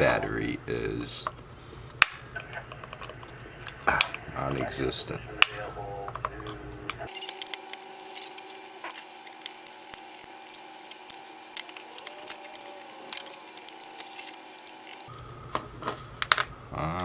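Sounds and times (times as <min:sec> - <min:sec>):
faint steady hum: 0:00.0 - 0:17.0
plastic case clicking and cracking: 0:01.2 - 0:04.2.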